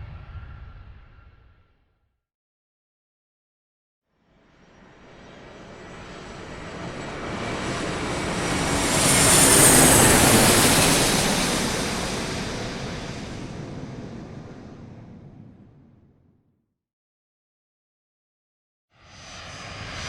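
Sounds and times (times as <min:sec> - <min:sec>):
airplane flying past: 0:19.0 - 0:20.0.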